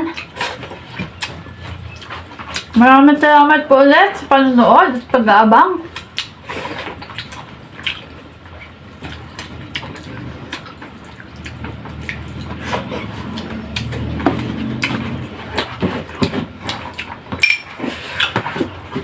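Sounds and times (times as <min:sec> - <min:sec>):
spoons and forks clicking on bowls: 0:17.4 - 0:17.7.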